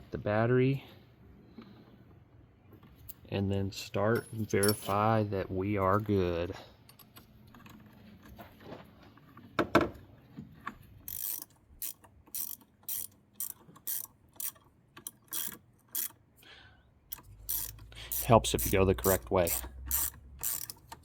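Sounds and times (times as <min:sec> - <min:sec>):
hand ratchet clicking: 0:11.0 - 0:16.2, 0:17.1 - 0:21.0.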